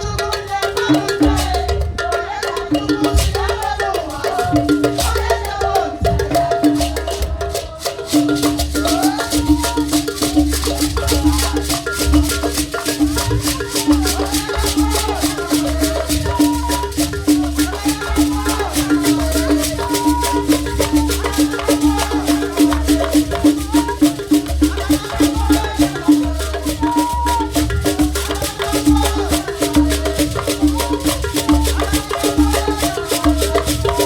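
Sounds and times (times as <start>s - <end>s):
shakers and rattles: 0.0s - 34.0s
voices singing: 0.0s - 34.0s.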